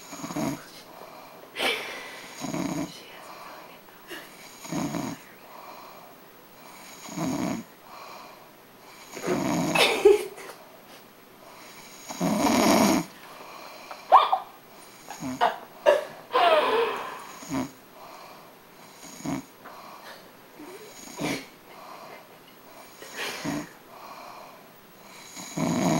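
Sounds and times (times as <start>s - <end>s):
woman snoring: 0.0s - 8.4s, 9.0s - 9.9s, 11.6s - 14.1s, 14.9s - 25.9s
short snorts: 1.6s - 2.9s, 4.4s - 5.2s, 9.0s - 10.0s, 11.7s - 13.1s, 14.9s - 17.8s, 18.8s - 22.1s, 22.9s - 23.8s, 25.1s - 25.9s.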